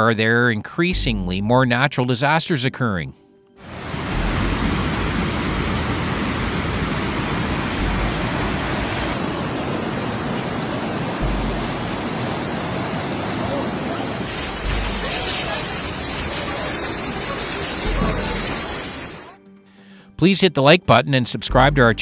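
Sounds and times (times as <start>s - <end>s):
rushing water: 3.6s - 19.4s.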